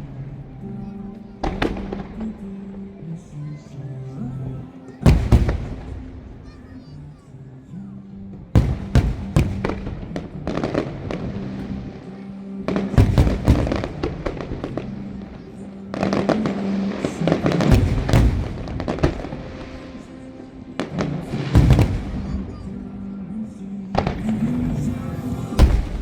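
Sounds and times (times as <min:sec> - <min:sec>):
music: 0:00.0 - 0:26.0
fireworks bangs and crackles: 0:01.4 - 0:02.6, 0:05.0 - 0:06.9, 0:08.3 - 0:23.1, 0:24.0 - 0:26.0.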